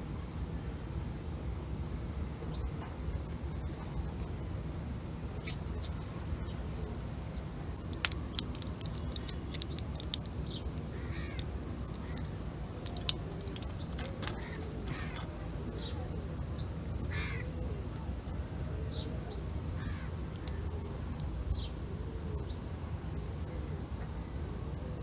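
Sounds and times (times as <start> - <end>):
steady low hum: 0.0 - 25.0
bird calls: 8.0 - 24.8.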